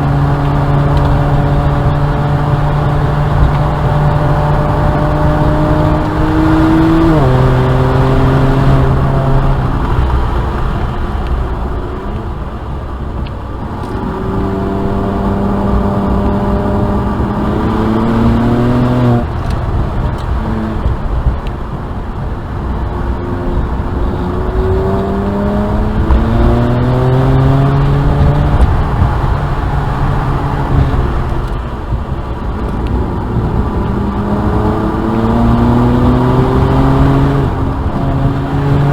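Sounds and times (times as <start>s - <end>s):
car engine revving under acceleration: 0.0s - 38.9s.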